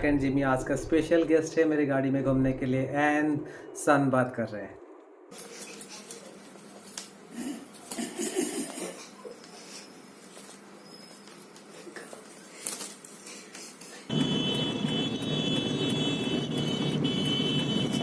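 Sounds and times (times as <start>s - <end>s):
car driving noise: 14.1s - 18.0s.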